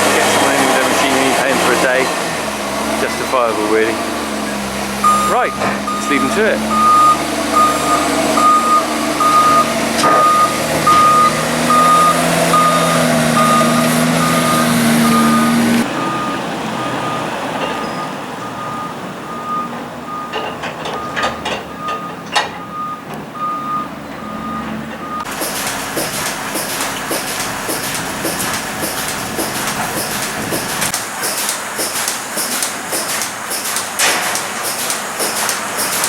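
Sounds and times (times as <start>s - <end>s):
diesel engine working hard: 0.0s - 36.0s
reversing alarm beeping: 5.0s - 25.3s
sharp clicks: 25.2s - 36.0s.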